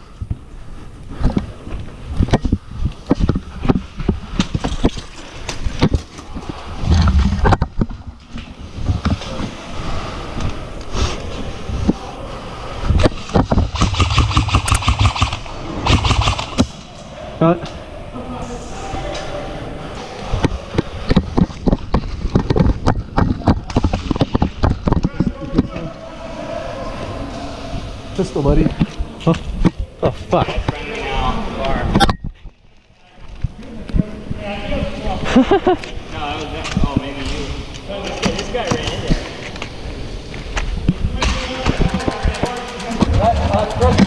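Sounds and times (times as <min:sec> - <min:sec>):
low rumble: 0:06.5 - 0:09.0
footsteps and gear knocking: 0:13.0 - 0:16.8, 0:20.8 - 0:25.6, 0:41.4 - 0:44.0.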